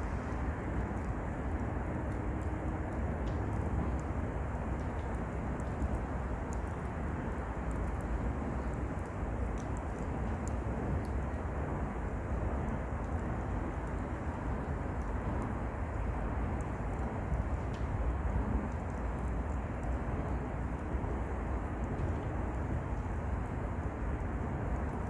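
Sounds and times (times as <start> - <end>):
fire crackling: 0.0 - 25.0
fire low rumble: 0.0 - 25.0.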